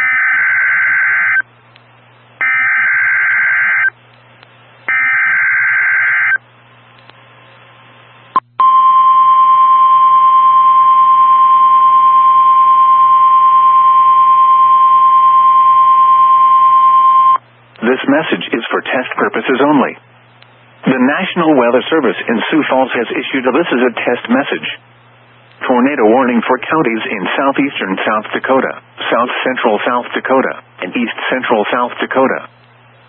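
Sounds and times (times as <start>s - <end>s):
click: 4.1s - 4.6s, 7.0s - 7.2s
loud high alarm beep: 8.6s - 17.4s.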